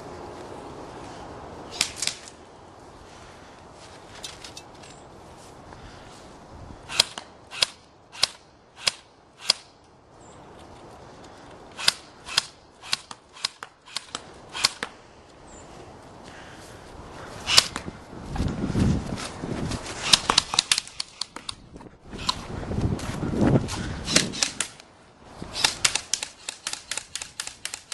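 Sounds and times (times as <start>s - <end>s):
wind buffeting microphone: 5.6s - 7.0s, 15.7s - 26.0s
airsoft rifle shots: 6.9s - 9.7s, 11.8s - 15.0s, 17.5s - 17.8s, 20.0s - 21.6s, 24.0s - 24.8s, 25.6s - 27.9s.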